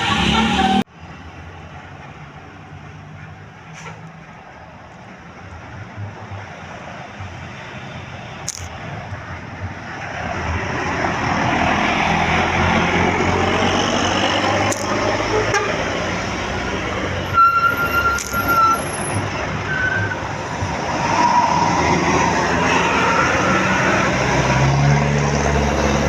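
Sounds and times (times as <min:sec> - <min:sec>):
bus engine and road noise: 0:00.0 - 0:26.0
bus horn: 0:14.9 - 0:16.1, 0:17.2 - 0:20.2.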